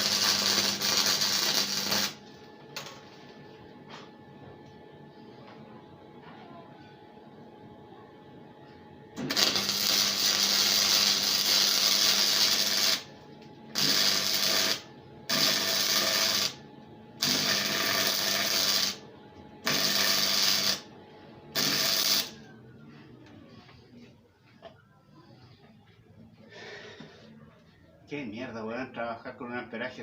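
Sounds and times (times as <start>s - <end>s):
arc welder hissing: 0.0s - 2.9s, 9.2s - 16.6s, 17.2s - 19.0s, 19.6s - 20.9s, 21.5s - 22.4s
steady electrical buzz: 0.0s - 5.4s, 8.2s - 22.6s.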